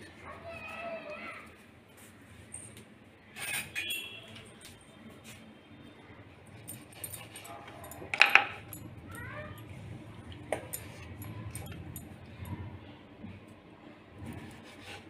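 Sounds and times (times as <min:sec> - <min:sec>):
metal kitchen utensils clinking: 0:03.3 - 0:04.2, 0:06.6 - 0:09.7.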